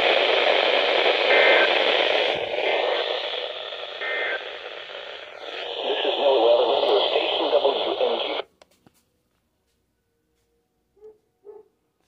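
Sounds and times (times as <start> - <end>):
radio static hiss: 0.0 - 8.5.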